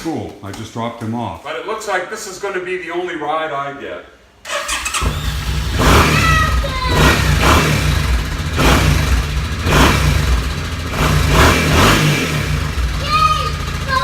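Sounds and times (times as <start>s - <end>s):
motorcycle engine revving: 4.5s - 14.0s.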